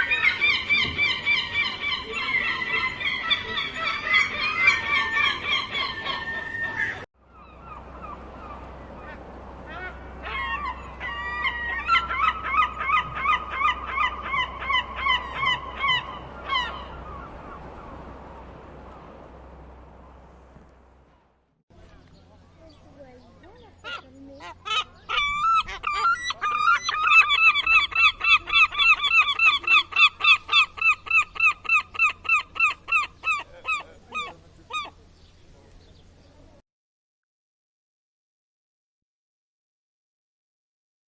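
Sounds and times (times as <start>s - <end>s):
gull repeated calls: 0.0s - 18.0s, 23.8s - 35.0s
gulls crying: 0.0s - 35.2s.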